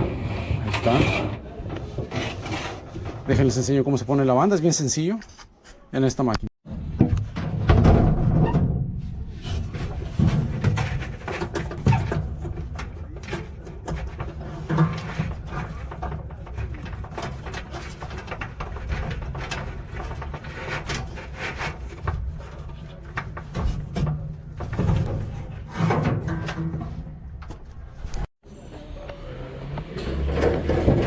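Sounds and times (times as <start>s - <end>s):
clicks and knocks from dryer parts: 9.8s - 27.8s.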